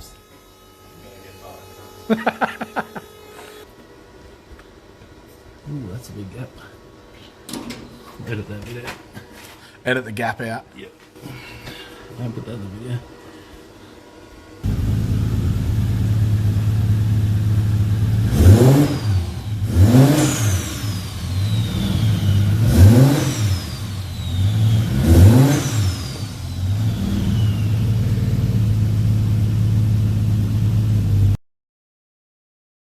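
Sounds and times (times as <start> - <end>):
car engine idling and revving: 14.6 - 31.4
turbo whistle: 18.7 - 28.5.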